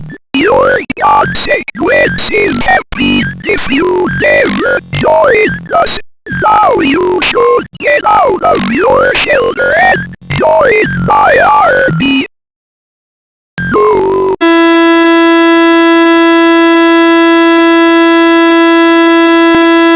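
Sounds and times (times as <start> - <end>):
buzzy electronic tone: 13.6 - 19.9.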